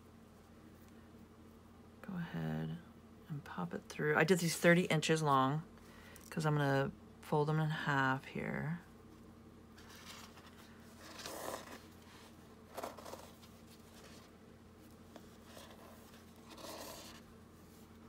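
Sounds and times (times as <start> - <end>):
low steady hum: 0.0 - 18.0
cloth scraping against card: 15.1 - 17.3.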